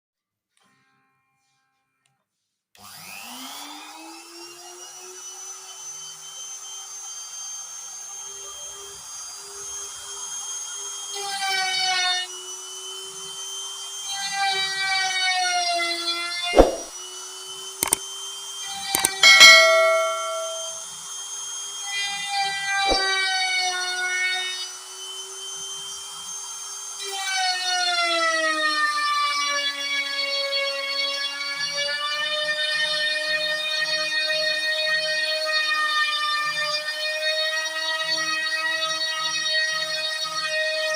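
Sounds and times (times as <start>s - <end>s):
higher tones: 19.0s - 20.8s.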